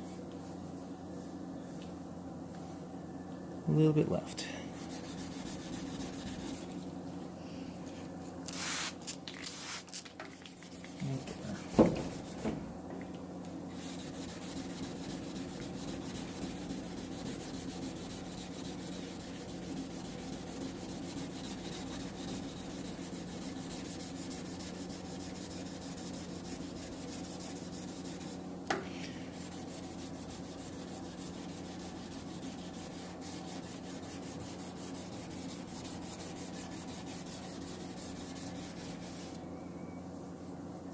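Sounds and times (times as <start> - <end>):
sandpaper scuffing paint: 4.8 - 6.8, 8.5 - 9.9, 10.5 - 12.6, 13.7 - 28.4, 29.3 - 39.4.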